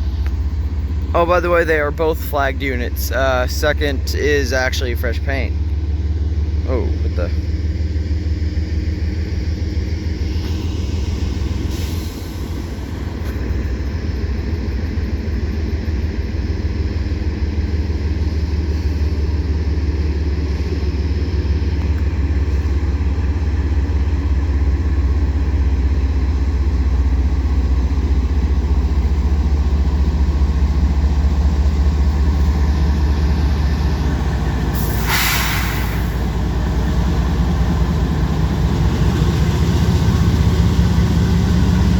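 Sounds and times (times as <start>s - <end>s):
freight train rumbling on rails: 0.0s - 41.9s
brief hiss: 34.8s - 36.3s.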